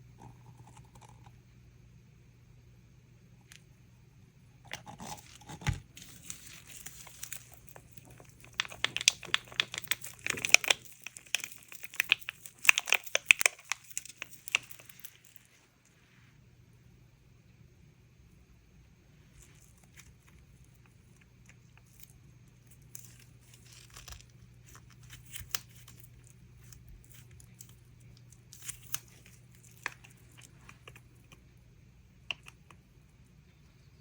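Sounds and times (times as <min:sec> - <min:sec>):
plastic crinkling: 0:04.8 - 0:15.6, 0:19.4 - 0:31.4
sharp crackles and clicks: 0:06.0 - 0:15.4.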